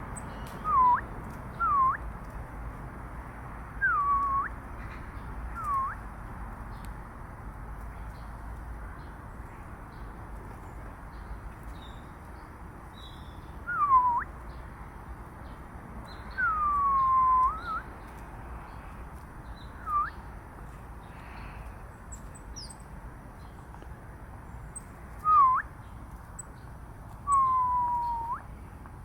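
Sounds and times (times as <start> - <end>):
loud whistled calls: 0.6 - 2.0, 3.8 - 4.6, 5.6 - 6.0, 13.6 - 14.3, 16.3 - 17.9, 19.8 - 20.2, 25.2 - 25.7, 27.3 - 28.5.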